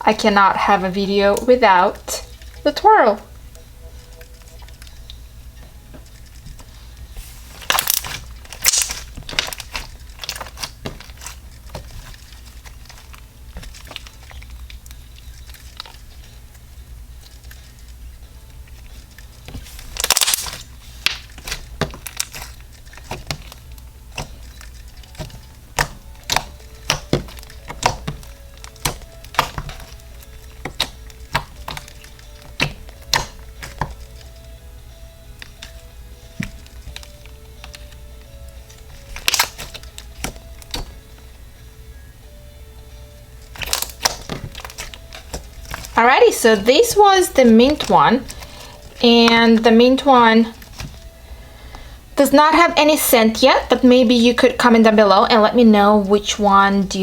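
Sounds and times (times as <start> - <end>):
slime popping and crackling: 5.8 - 16.6, 17.2 - 34.5, 35.3 - 41.1, 43.4 - 51.2.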